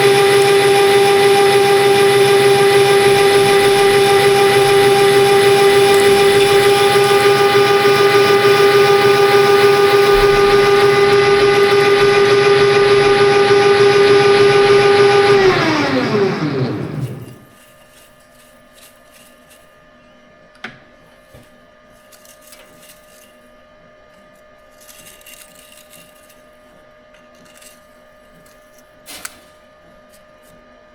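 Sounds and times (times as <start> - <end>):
electric motor whining: 0.0 - 17.5.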